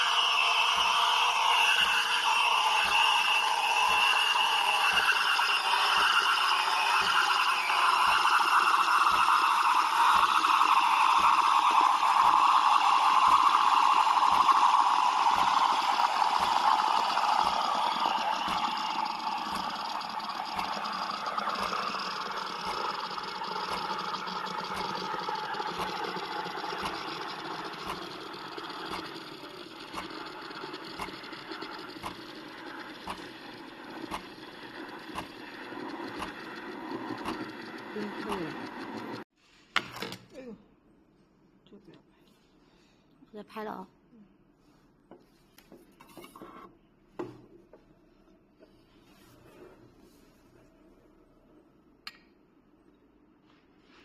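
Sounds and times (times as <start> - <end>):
espresso machine pump droning: 0.0 - 39.3
water gurgling: 0.8 - 39.2.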